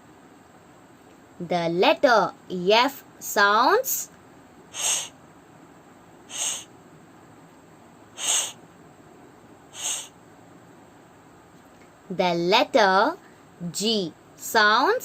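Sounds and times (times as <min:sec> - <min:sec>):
woman making fff sound: 0:04.8 - 0:05.1, 0:06.3 - 0:06.7, 0:08.2 - 0:08.6, 0:09.8 - 0:10.1.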